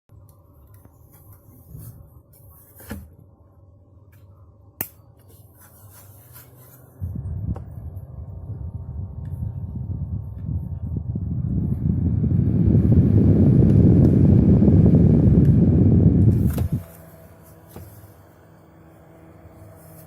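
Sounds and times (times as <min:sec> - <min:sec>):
fan airflow rumble: 0:00.2 - 0:20.0
plastic fan being handled: 0:16.2 - 0:18.3.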